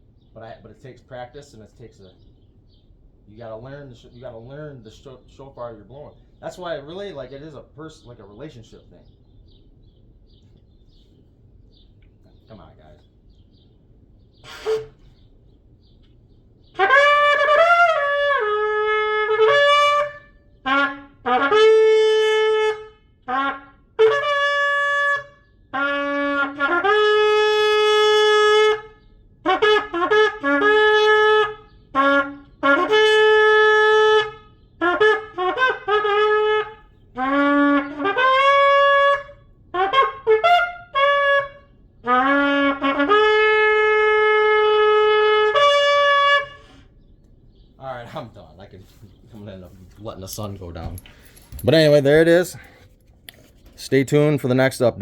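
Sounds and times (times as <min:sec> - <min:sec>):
shofar blasts: 0:14.4 - 0:15.1, 0:16.8 - 0:46.9.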